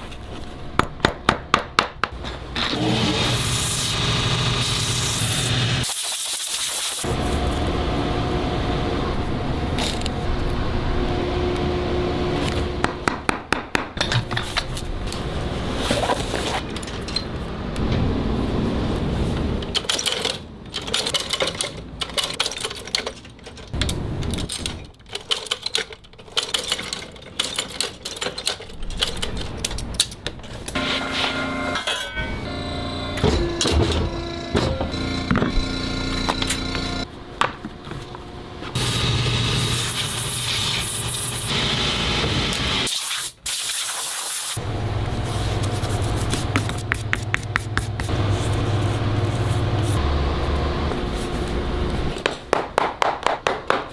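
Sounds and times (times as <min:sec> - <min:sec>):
multi-tone hum: 0:07.0 - 0:13.0, 0:30.8 - 0:42.9, 0:44.6 - 0:52.2
spray hissing: 0:38.8 - 0:41.6.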